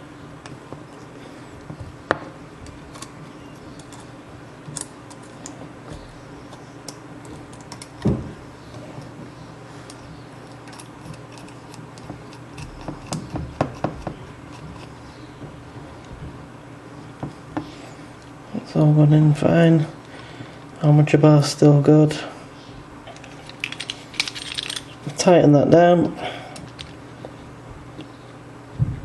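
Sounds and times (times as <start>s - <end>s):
faint steady hum: 0.0s - 29.0s
heavy thump: 28.8s - 29.0s.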